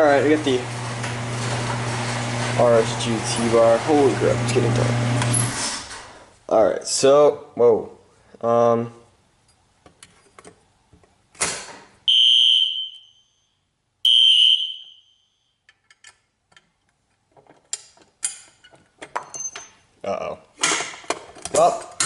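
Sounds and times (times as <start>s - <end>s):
fire alarm horn blasts: 12.1s - 13.3s, 14.0s - 15.4s.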